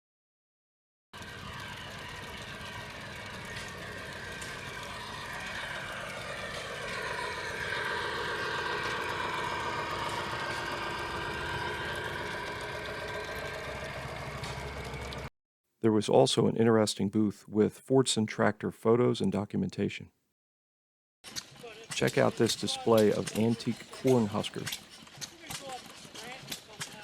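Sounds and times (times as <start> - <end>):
model train motor whining: 1.2 - 15.3.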